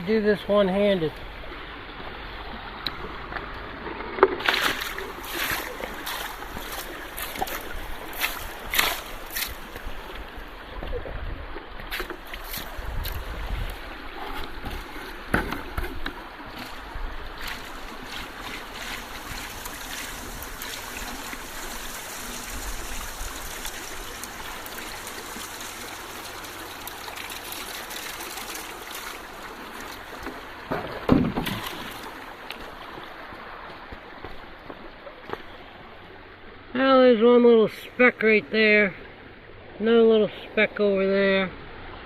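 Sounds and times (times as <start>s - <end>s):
water sloshing in a pan: 16.5s - 30.6s.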